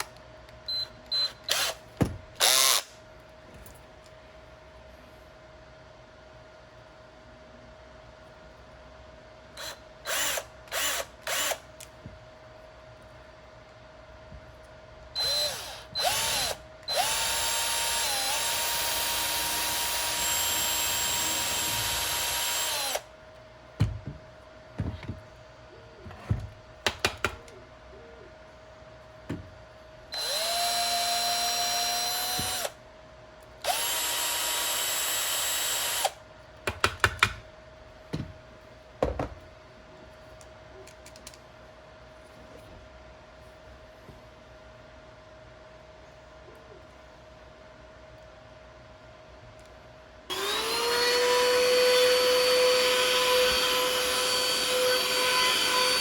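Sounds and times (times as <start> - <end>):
small power tool whining: 1.1 - 1.8, 15.2 - 23.1, 30.2 - 32.8, 33.6 - 36.2, 50.3 - 56.0.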